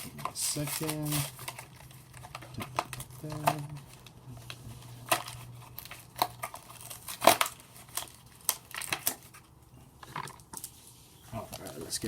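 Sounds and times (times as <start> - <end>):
foil wrapper crinkling: 0.0 - 9.5.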